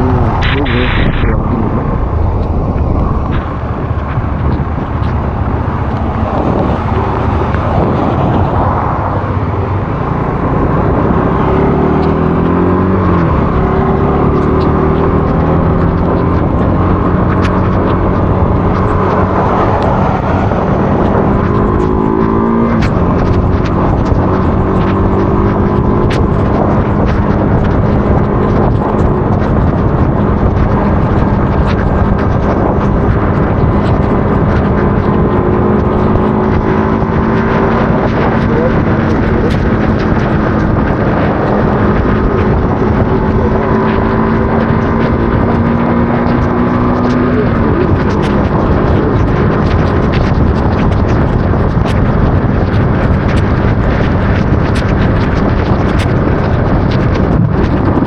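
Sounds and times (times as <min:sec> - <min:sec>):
heavy wind noise: 0:00.0 - 0:58.0
motorcycle engine revving: 0:00.0 - 0:58.0
sharp ticks: 0:11.9 - 0:58.0.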